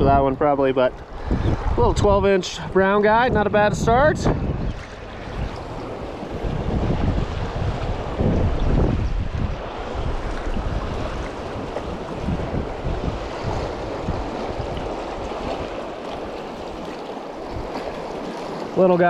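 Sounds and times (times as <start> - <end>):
wind buffeting microphone: 0.0 - 19.0
river current rushing: 4.3 - 19.0.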